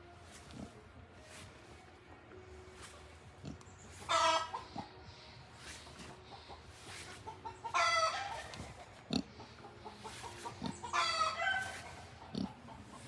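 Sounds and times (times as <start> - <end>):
pig snorting: 3.4 - 4.9, 7.9 - 13.0.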